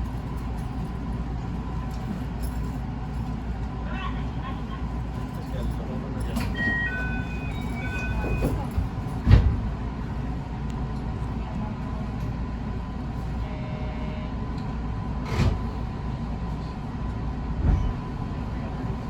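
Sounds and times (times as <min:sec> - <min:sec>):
train wheels rumbling on rail: 0:00.0 - 0:19.0.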